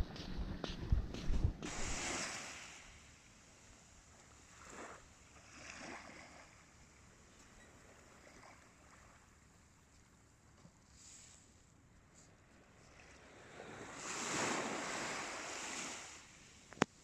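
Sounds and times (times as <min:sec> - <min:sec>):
faint surf washing on beach: 0:00.0 - 0:06.7, 0:12.8 - 0:17.0.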